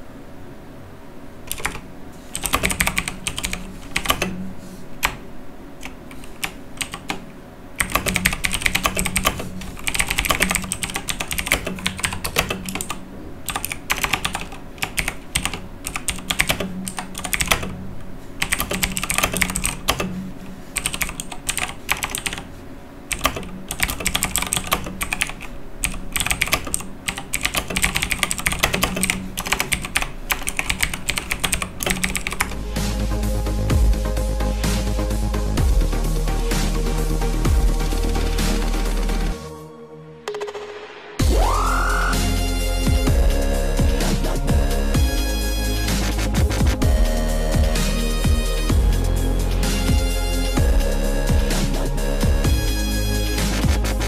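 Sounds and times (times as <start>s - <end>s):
mechanical keyboard typing: 1.5s - 4.4s, 5.0s - 5.2s, 5.8s - 7.2s, 7.8s - 17.8s, 18.4s - 20.1s, 20.8s - 22.5s, 23.1s - 32.6s.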